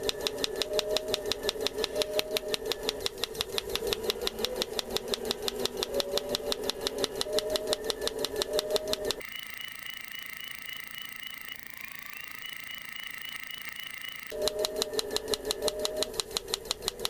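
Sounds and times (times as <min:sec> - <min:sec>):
motor whine: 0:09.2 - 0:14.4.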